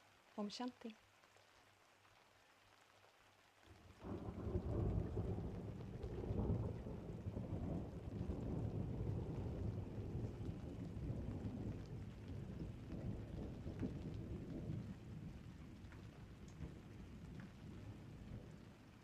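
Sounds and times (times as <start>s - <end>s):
rain falling: 0.0s - 19.0s
raindrops ticking: 0.0s - 19.0s
thunder rumbling: 4.0s - 19.0s.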